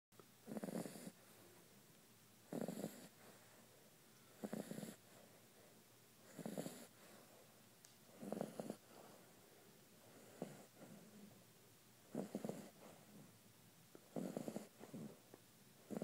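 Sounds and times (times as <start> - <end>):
puppy snoring: 0.4 - 1.2, 2.5 - 3.4, 4.3 - 5.2, 6.2 - 7.3, 8.1 - 9.2, 10.0 - 11.4, 12.0 - 13.3, 14.0 - 16.0.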